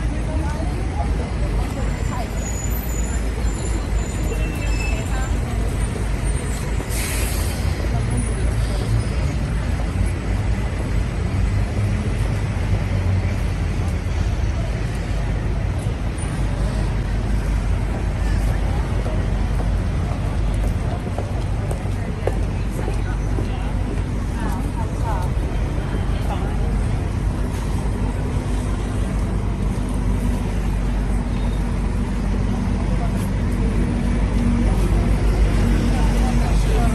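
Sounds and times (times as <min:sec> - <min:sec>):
car and bus engines rumbling: 0:00.0 - 0:36.9
road noise: 0:00.0 - 0:36.9.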